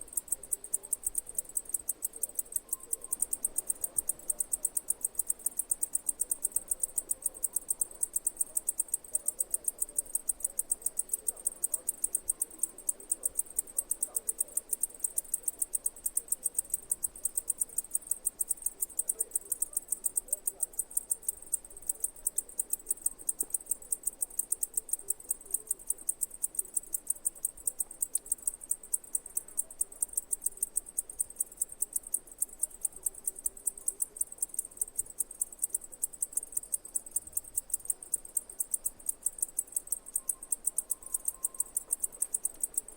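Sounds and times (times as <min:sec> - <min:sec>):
cicadas chirring: 0:33.1 - 0:42.9.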